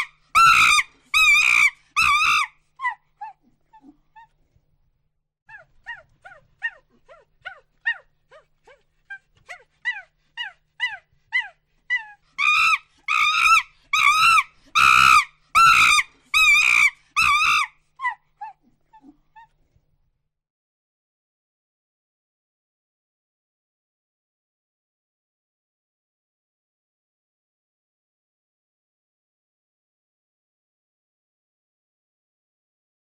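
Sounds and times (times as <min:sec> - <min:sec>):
monkey hooting: 0:00.0 - 0:04.3, 0:05.5 - 0:08.4, 0:09.5 - 0:19.5.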